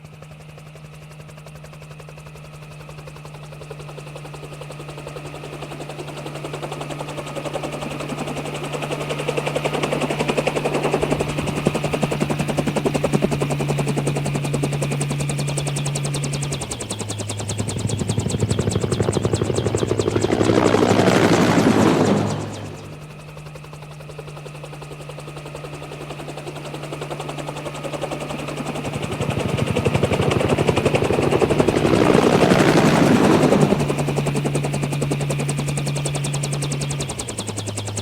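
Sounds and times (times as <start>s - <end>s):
engine running with pulsing beat: 14.1s - 24.0s, 27.0s - 38.0s.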